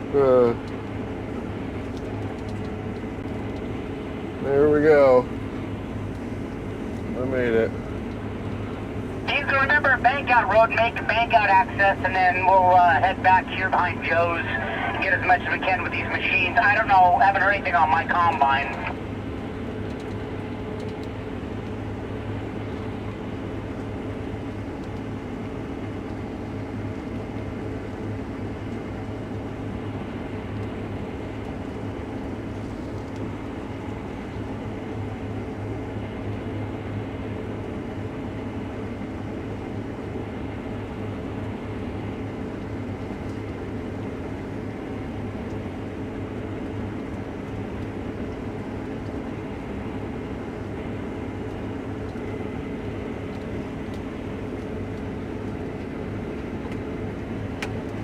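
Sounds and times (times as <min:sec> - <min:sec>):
combine harvester engine drone: 0:00.0 - 0:28.2.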